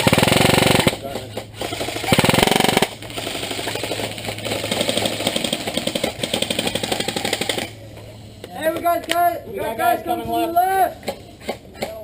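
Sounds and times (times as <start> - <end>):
airsoft guns firing full auto: 0.0 - 7.8.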